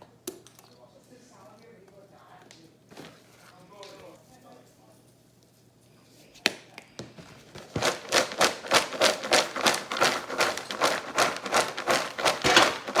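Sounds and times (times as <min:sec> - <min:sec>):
popcorn popping: 0:07.3 - 0:13.0.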